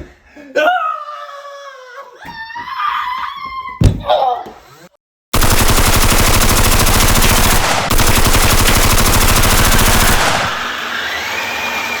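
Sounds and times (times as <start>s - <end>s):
machine-gun fire: 5.4s - 10.7s.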